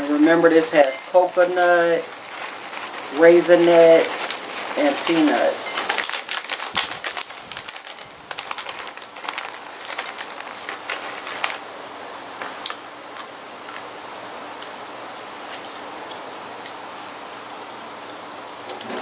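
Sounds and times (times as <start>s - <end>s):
snack mix sprinkled clicking: 0.8s - 4.3s, 5.0s - 11.6s, 12.4s - 17.2s.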